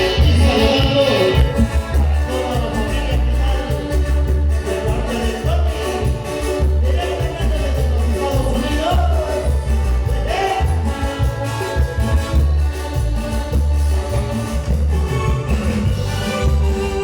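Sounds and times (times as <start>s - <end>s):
latin band music: 0.0s - 17.0s.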